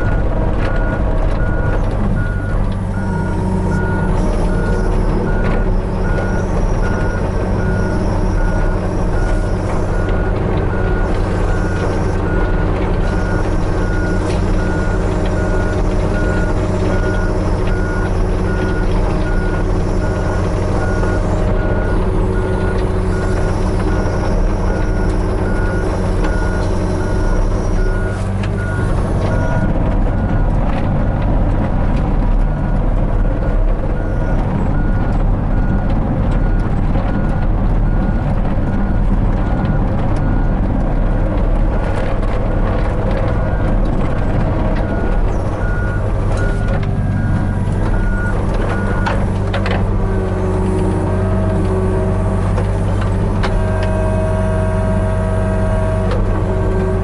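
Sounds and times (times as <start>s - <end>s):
excavator diesel engine running: 0.0s - 57.0s
rapid warning beeps: 44.8s - 49.2s.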